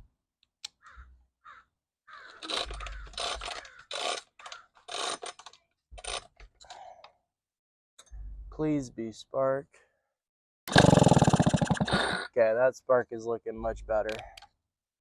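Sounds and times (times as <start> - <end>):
moped engine cranking: 2.4 - 6.4, 10.7 - 12.1.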